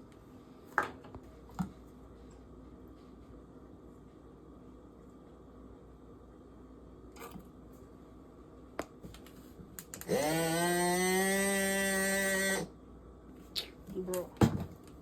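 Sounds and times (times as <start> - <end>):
small electric motor whirring: 10.0 - 12.7.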